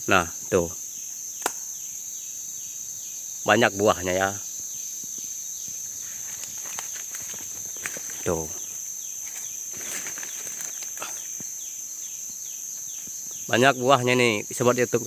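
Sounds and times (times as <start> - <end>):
high-pitched insect drone: 0.0 - 15.0
light clicks and rustles: 5.0 - 8.4.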